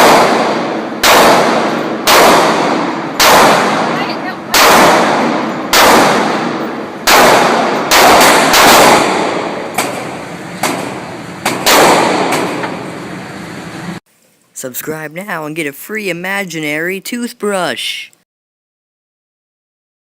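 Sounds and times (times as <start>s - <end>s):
gunshots with ringing echo: 0.0s - 12.8s.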